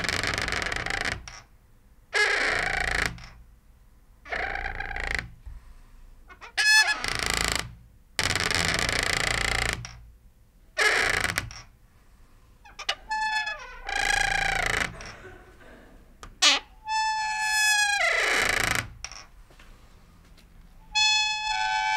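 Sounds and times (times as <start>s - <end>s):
door hinge creaking: 0.0s - 1.5s, 2.2s - 3.4s, 4.3s - 5.4s, 6.3s - 10.1s, 10.8s - 11.7s, 12.6s - 15.3s, 16.2s - 19.3s, 20.8s - 21.9s.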